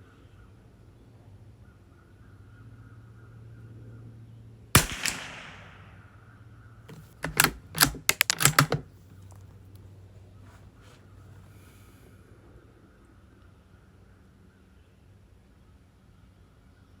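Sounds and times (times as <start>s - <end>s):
rifle bolt metallic clicks: 4.8s - 6.0s, 6.9s - 8.8s
rifle shot with echo: 4.8s - 6.2s.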